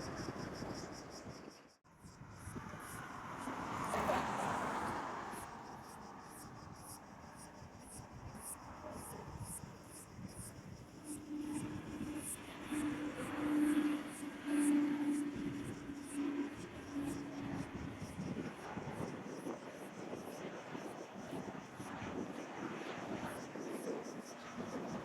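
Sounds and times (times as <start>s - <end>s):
insects chirping: 0.0s - 25.0s
distant aircraft noise: 2.0s - 25.0s
steady low hum: 5.5s - 19.3s.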